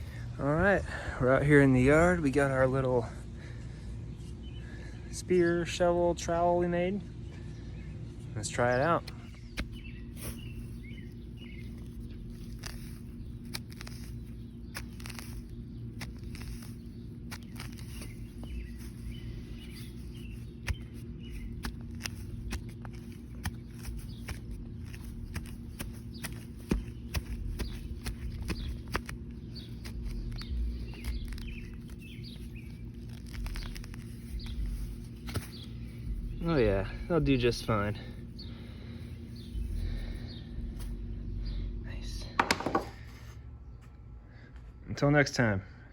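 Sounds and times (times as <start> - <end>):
small birds chirping: 0.0 - 44.7
low outdoor hum: 0.0 - 45.9
trowel scraping into soil: 11.6 - 36.0.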